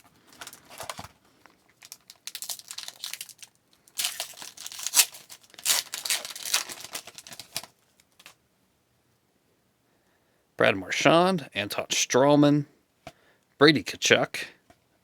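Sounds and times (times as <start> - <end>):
wrapper crinkling and tearing: 0.0 - 8.4.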